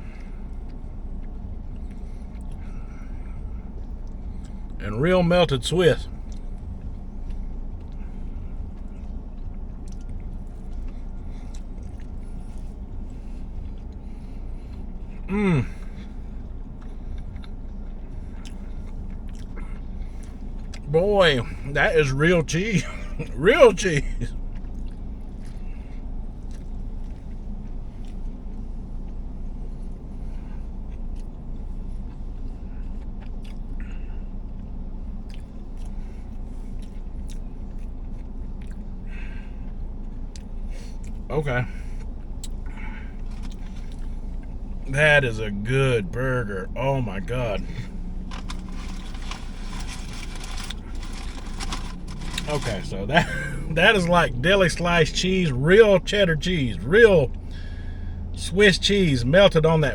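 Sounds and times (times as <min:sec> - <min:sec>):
steady low hum: 0:00.0 - 0:59.9
person chewing: 0:06.2 - 0:20.9, 0:24.4 - 0:44.8, 0:47.5 - 0:52.7
low rumble: 0:24.0 - 0:58.5
soft crackles: 0:47.4 - 0:53.0.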